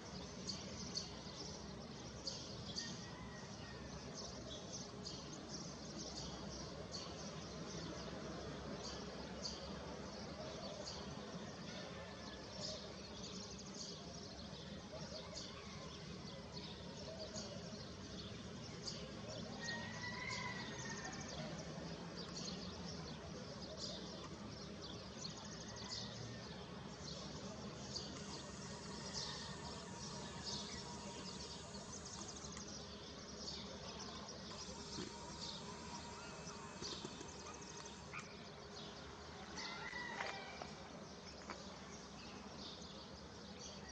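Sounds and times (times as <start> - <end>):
faint background noise: 0.0 - 43.9
small birds chirping: 12.8 - 40.1.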